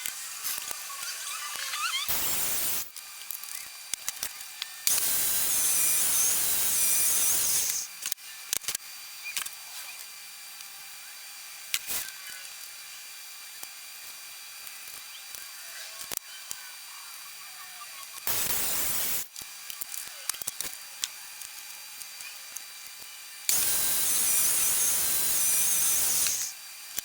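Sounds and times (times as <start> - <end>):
power saw cutting wood: 0.0 - 3.0, 4.3 - 7.9, 22.8 - 26.8.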